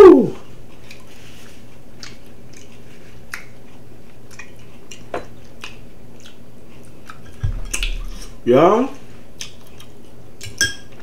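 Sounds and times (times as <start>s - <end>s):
steady low hum: 0.1s - 11.0s
chewing and wet mouth clicks: 0.7s - 1.1s, 2.0s - 8.4s, 9.4s - 10.6s.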